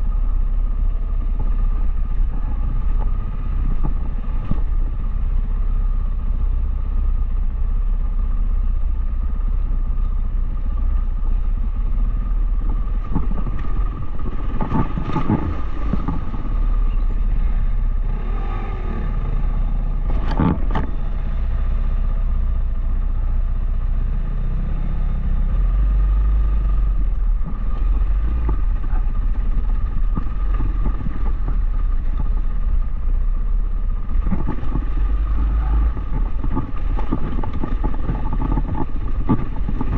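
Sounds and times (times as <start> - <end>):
motorcycle engine running: 0.0 - 39.9
wind on microphone: 12.0 - 21.8, 25.2 - 39.9.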